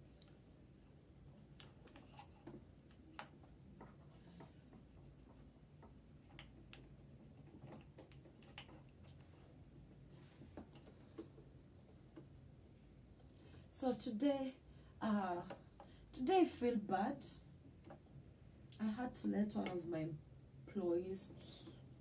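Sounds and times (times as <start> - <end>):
low steady hum: 0.0 - 22.0
small clicks and taps: 7.5 - 9.3.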